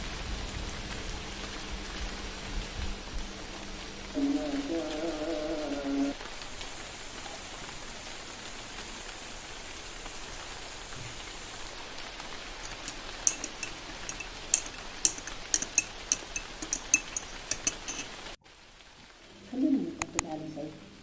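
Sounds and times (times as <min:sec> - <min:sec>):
steady rain hiss: 0:00.0 - 0:21.0
sharp light clinks: 0:12.6 - 0:18.2.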